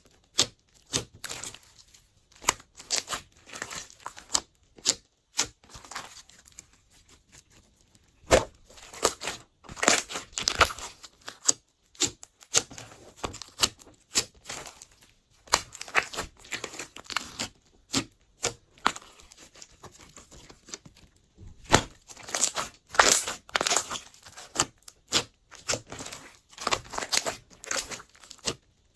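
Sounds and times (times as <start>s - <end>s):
slime crackling and popping: 8.1s - 28.6s.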